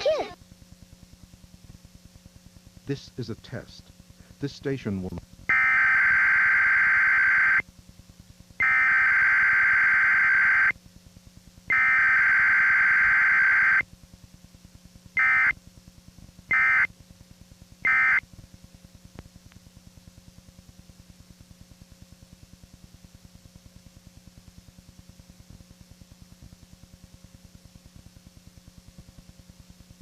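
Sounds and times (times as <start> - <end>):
harsh electronic data tones: 5.5 - 7.6, 8.6 - 10.7, 11.7 - 13.8, 15.2 - 15.5, 16.5 - 16.9, 17.9 - 18.2.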